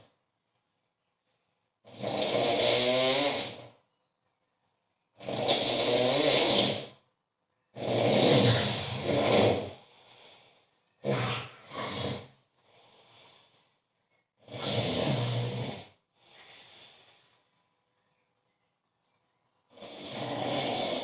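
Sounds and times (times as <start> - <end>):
man snoring loudly: 1.9 - 3.6, 5.2 - 7.0, 7.8 - 9.8, 11.0 - 12.4, 14.4 - 16.0, 19.7 - 21.0
faint breath: 9.7 - 11.8, 12.6 - 14.3, 16.1 - 18.3.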